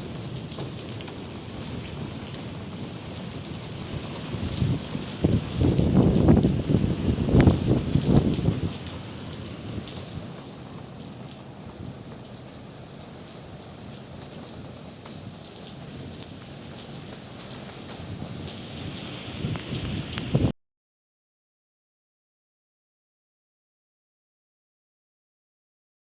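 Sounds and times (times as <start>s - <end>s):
heavy rain falling: 0.0s - 20.5s
thunder rumble: 3.9s - 8.9s.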